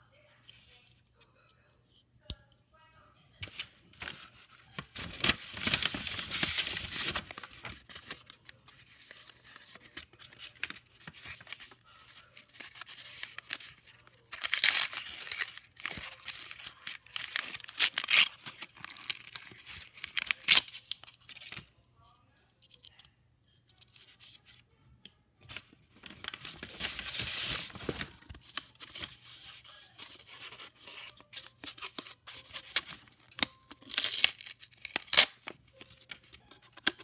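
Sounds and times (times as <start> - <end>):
paper rustling: 3.4 - 21.6, 25.5 - 37.0
paper being torn and crinkled: 4.8 - 8.2, 12.4 - 21.0, 30.0 - 35.6.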